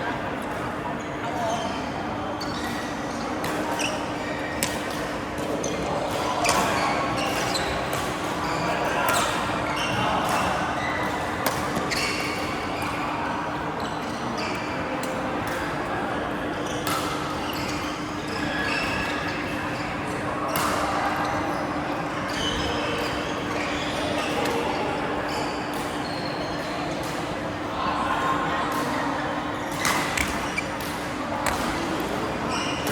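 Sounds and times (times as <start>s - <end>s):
shoes squeaking on court: 1.3s - 5.0s, 5.7s - 13.0s, 29.6s - 32.9s
racket hitting shuttlecock: 29.7s - 32.9s.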